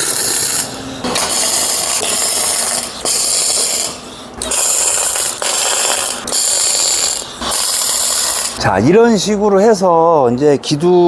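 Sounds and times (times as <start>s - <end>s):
arc welder crackling: 0.0s - 8.8s.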